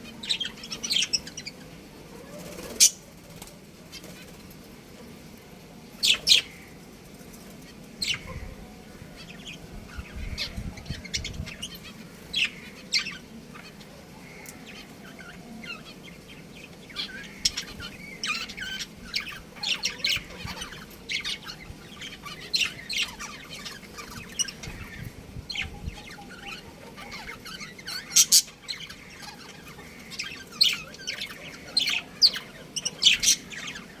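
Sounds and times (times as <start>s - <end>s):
budgerigars chirping: 2.6s - 3.0s, 9.3s - 34.0s.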